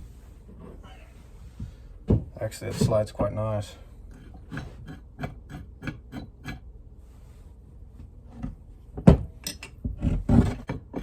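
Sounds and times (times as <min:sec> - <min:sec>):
metal vise parts clanking: 0:09.2 - 0:11.0.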